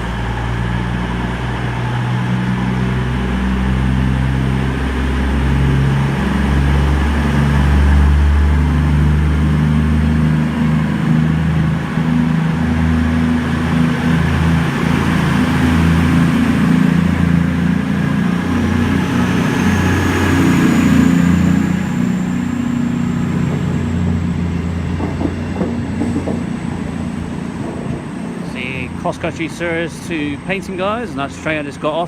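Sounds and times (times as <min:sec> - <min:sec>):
diesel train engine throbbing: 0:00.0 - 0:32.0
faint rising whine: 0:00.0 - 0:32.0.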